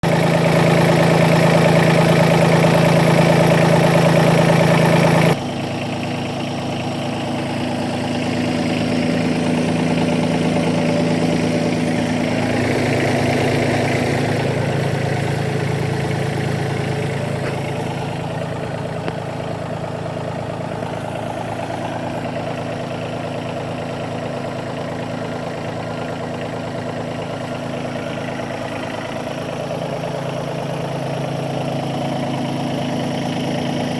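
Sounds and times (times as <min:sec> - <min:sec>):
loader engine running: 0:00.0 - 0:33.9.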